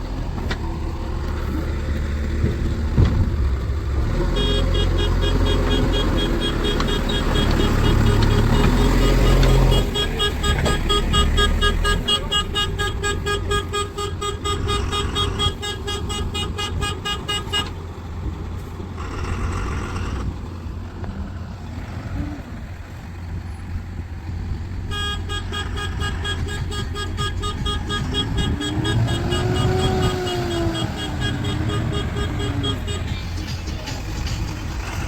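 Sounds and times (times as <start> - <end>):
diesel engine running: 0.0 - 35.0
reversing alarm beeping: 4.4 - 13.6.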